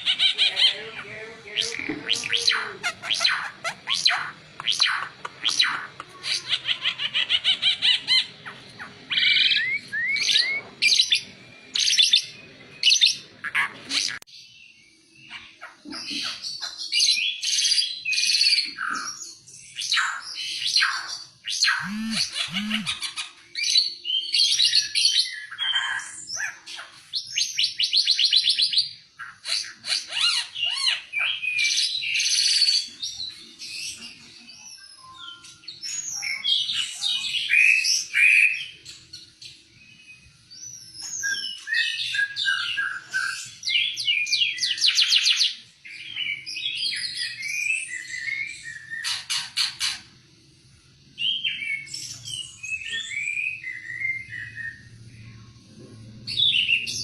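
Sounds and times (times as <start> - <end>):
songbird singing trills and whistles: 0.0 - 50.1, 51.2 - 55.4.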